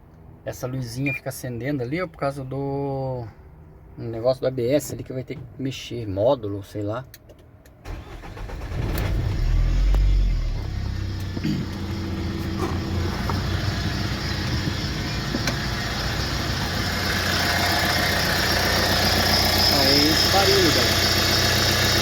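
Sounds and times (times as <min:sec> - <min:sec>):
diesel engine starting and idling: 0:07.8 - 0:22.0
high rushing engine noise: 0:11.7 - 0:22.0.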